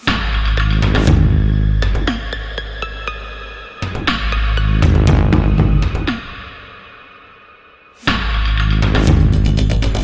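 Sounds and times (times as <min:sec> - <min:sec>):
music with heavy bass and drums: 0:00.0 - 0:03.2, 0:03.8 - 0:06.4, 0:08.0 - 0:10.0.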